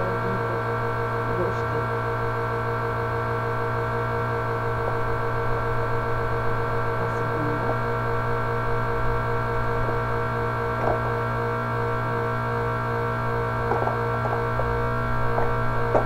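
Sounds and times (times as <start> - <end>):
electric fan humming: 0.0 - 16.0.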